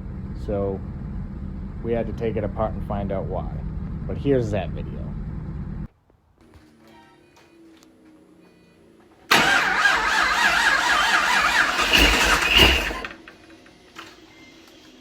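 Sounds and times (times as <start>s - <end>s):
car engine starting and running: 0.0s - 5.9s, 9.3s - 13.6s.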